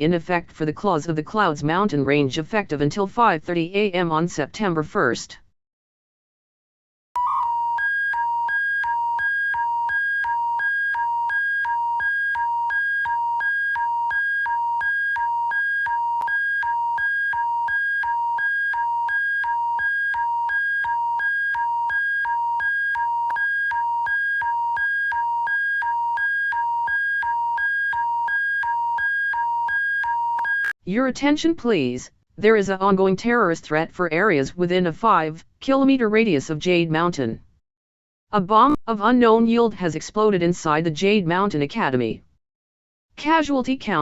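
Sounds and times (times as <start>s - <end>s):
two-pitch alarm tone pulsing: 7.2s - 30.7s.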